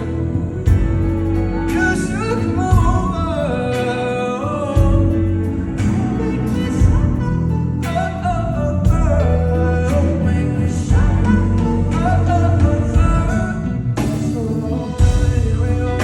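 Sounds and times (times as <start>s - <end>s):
band playing pop music: 0.0s - 16.0s
man singing: 0.0s - 16.0s
drum hits: 0.7s - 3.3s, 6.8s - 7.4s.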